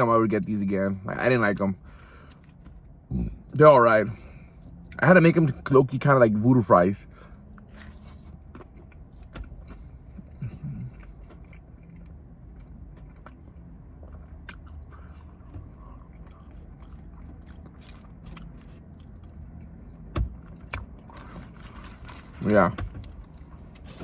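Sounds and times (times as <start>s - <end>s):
low steady hum: 0.0s - 24.0s
person chewing food: 7.4s - 22.2s.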